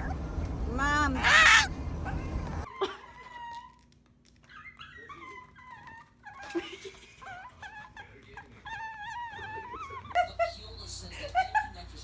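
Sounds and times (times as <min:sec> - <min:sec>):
dog whining: 0:01.1 - 0:10.2.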